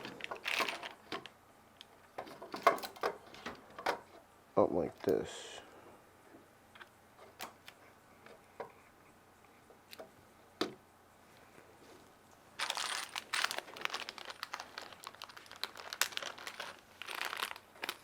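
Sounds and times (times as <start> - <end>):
plastic bag crinkling: 0.0 - 1.3, 12.6 - 18.0.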